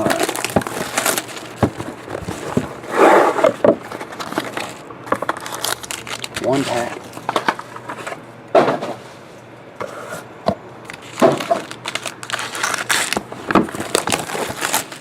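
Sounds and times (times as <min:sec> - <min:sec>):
cardboard clacks and knocks: 0:00.0 - 0:05.4
card pack crinkling and rustling: 0:00.0 - 0:08.2, 0:10.8 - 0:15.0.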